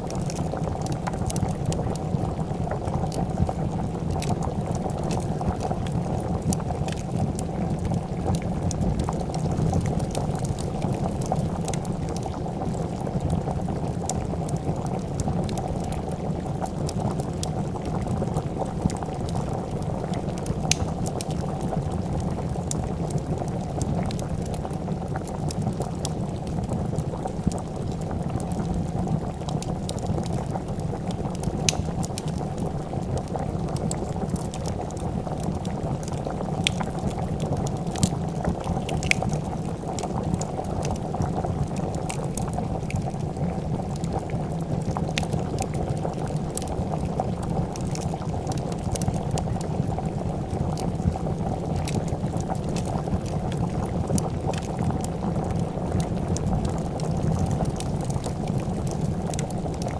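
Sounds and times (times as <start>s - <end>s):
soup bubbling at a boil: 0.0s - 59.9s
wood fire crackling: 0.0s - 59.9s.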